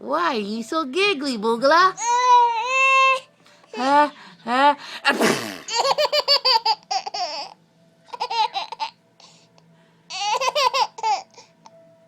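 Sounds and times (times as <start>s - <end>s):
baby giggling: 5.6s - 9.0s, 10.1s - 11.4s.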